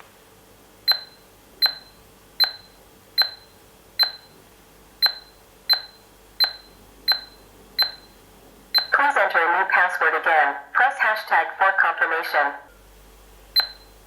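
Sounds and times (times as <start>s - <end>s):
keypad beeps: 0.9s - 4.4s, 5.0s - 9.0s, 13.6s - 14.0s.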